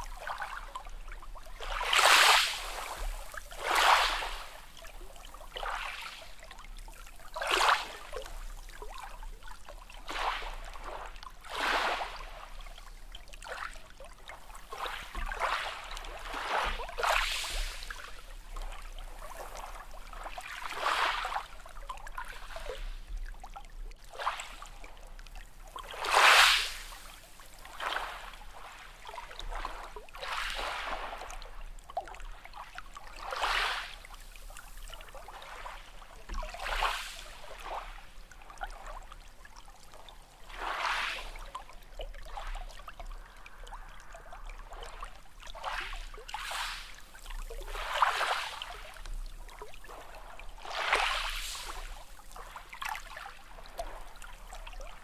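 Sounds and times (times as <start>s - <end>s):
small sea waves washing: 0.0s - 55.0s.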